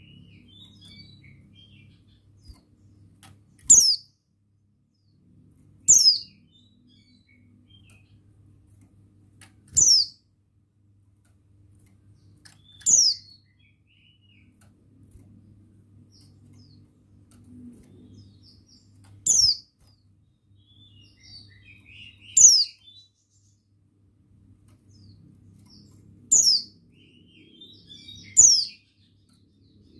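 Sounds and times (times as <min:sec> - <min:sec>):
bird twittering chirps: 0:03.6 - 0:04.2, 0:05.9 - 0:08.2, 0:09.7 - 0:10.2, 0:12.5 - 0:14.5, 0:17.9 - 0:23.5, 0:24.9 - 0:29.9.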